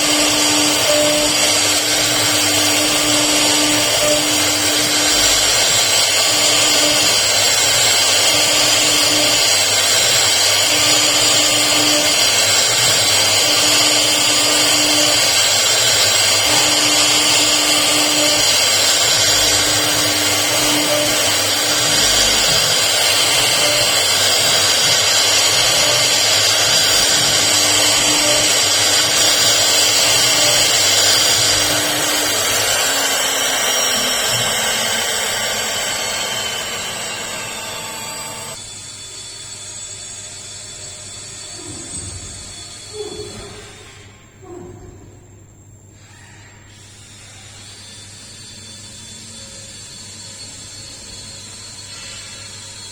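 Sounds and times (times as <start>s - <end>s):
router spindle cutting wood: 0.0s - 38.6s.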